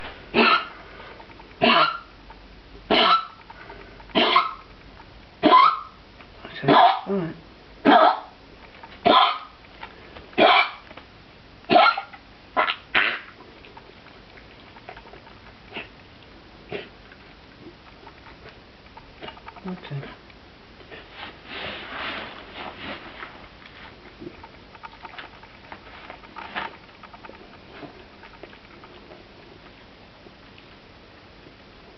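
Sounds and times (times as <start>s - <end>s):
dog coughing: 0.3s - 0.8s, 1.6s - 2.1s, 2.9s - 3.4s, 4.1s - 4.6s, 5.4s - 5.9s, 7.8s - 8.3s, 9.0s - 9.4s, 10.4s - 10.8s, 11.7s - 12.0s, 12.6s - 13.3s, 16.7s - 17.0s
dog clicking and tapping: 17.1s - 20.0s, 23.4s - 29.2s.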